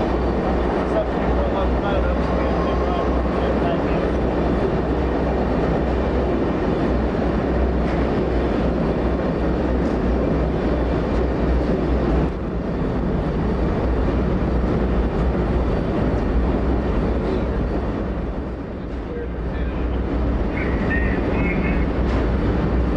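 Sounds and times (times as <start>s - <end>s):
deep engine hum: 0.0s - 12.4s
train wheels on rails: 0.0s - 22.9s.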